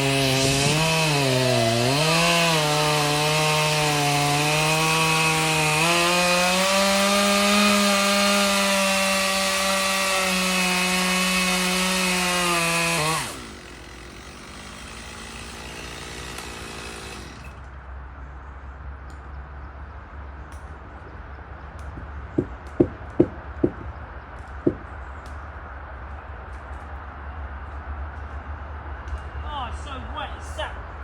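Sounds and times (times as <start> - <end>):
chainsaw cutting wood: 0.0 - 17.6, 21.8 - 23.9, 24.5 - 24.9.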